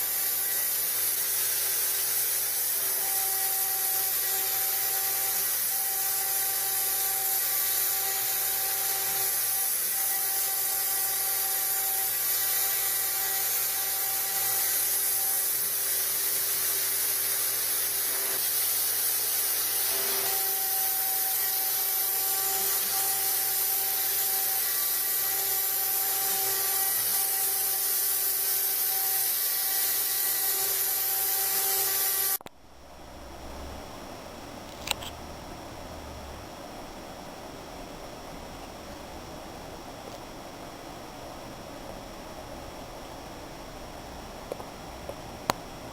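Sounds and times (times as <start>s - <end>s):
router spindle engraving steel: 0.0s - 32.4s.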